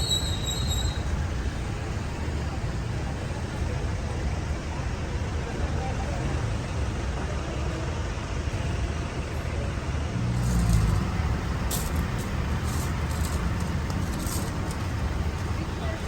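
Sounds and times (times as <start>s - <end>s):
steady road rumble: 0.0s - 16.0s
vehicle passing: 10.0s - 16.0s.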